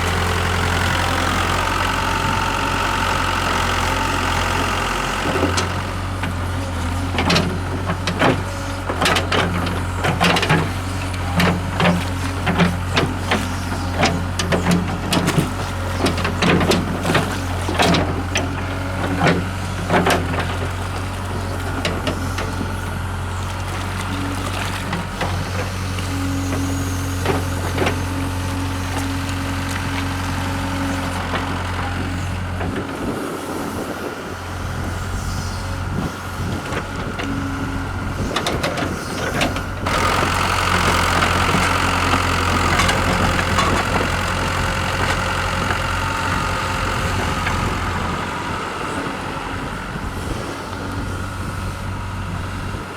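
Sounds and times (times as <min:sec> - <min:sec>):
hydraulic whine: 0:00.0 - 0:10.0, 0:21.4 - 0:52.9
excavator diesel engine running: 0:00.0 - 0:52.9.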